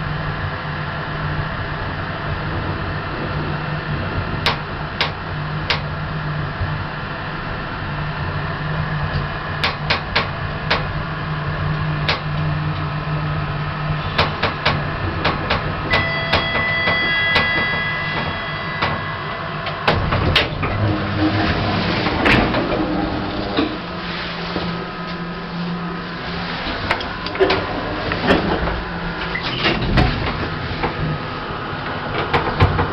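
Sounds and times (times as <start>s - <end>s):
steady low hum: 0.0s - 32.9s
lift mechanical clicks and knocks: 4.4s - 5.9s, 9.1s - 10.9s, 14.0s - 23.9s, 26.7s - 31.1s, 31.8s - 32.9s
lift door noise: 13.9s - 32.9s
sustained electronic beep: 15.9s - 19.9s.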